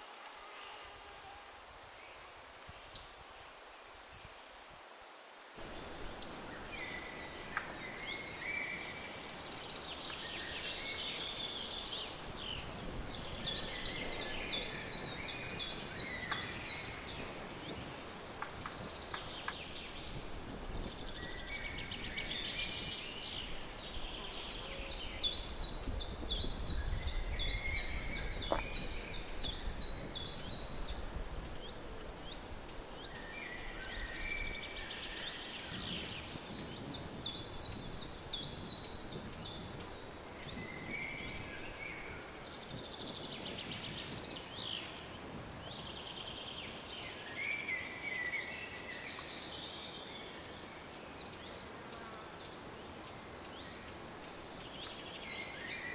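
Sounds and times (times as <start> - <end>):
low wind rumble: 5.6 - 47.3.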